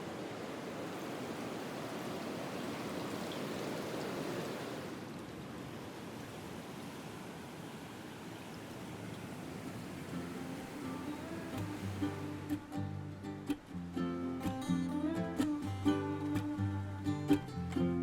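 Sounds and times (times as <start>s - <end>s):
seawater washing over rocks: 0.0s - 12.8s.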